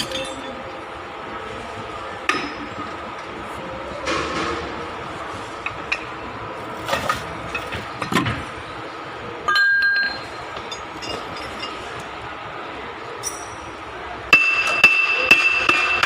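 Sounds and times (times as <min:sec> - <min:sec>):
metal tools clinking: 0:00.0 - 0:00.6, 0:09.5 - 0:12.1, 0:13.2 - 0:13.8.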